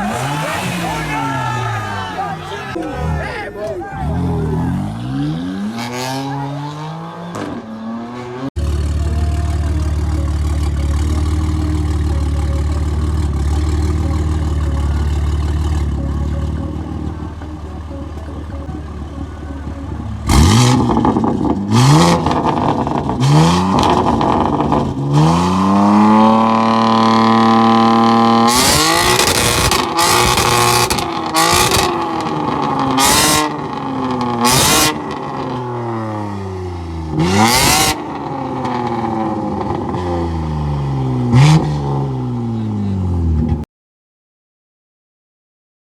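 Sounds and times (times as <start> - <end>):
car exhaust idling and revving: 0.0 - 6.1, 8.0 - 43.6
sharp exhaust cracks: 8.6 - 35.8.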